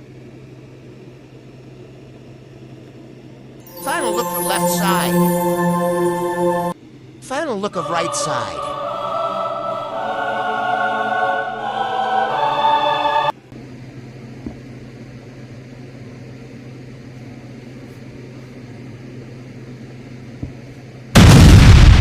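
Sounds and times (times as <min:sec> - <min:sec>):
music with voices singing: 0:03.7 - 0:06.8.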